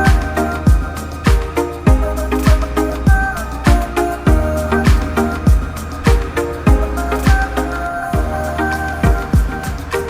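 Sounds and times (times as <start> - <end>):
held keyboard chords: 0.0 - 10.0
deep kick drum beat: 0.1 - 2.8.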